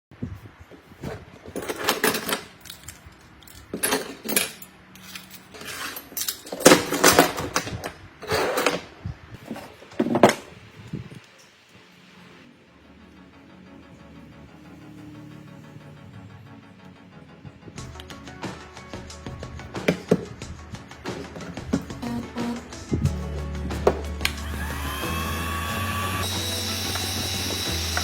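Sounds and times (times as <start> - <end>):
hard objects scraping and clicking: 0.7 - 10.5.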